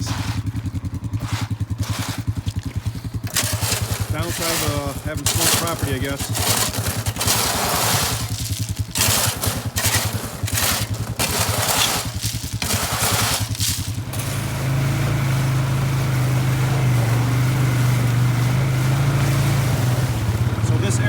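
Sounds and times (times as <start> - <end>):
atv engine running: 0.0 - 21.0
splashing through water and mud: 0.0 - 21.0.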